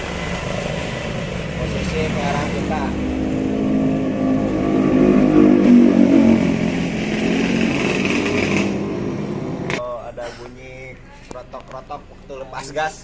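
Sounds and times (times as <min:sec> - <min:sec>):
scooter engine revving: 0:00.0 - 0:09.8.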